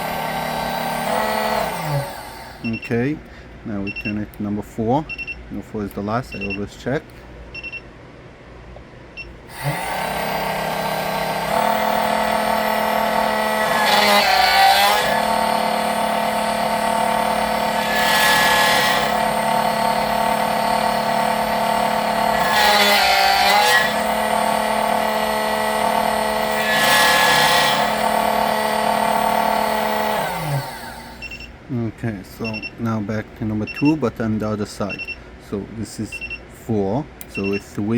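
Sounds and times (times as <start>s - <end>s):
key-cutting machine motor running: 0.0s - 2.8s, 9.5s - 31.5s
cutter grinding on key blade: 9.5s - 31.4s.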